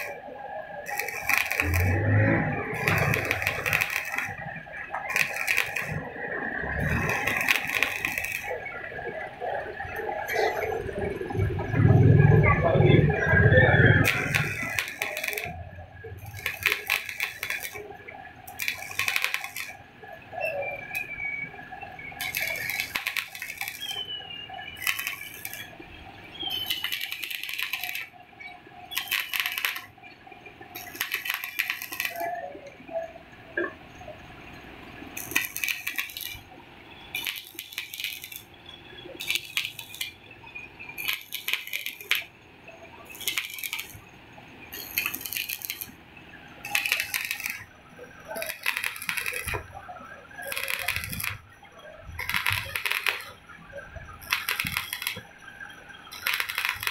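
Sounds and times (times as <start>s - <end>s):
hissing metallic scraping: 22.2s - 25.8s.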